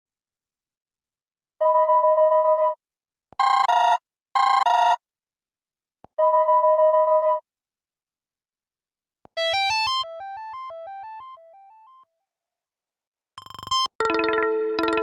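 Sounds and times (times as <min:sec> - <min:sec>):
electronic phone ringtone: 0:13.9 - 0:15.0.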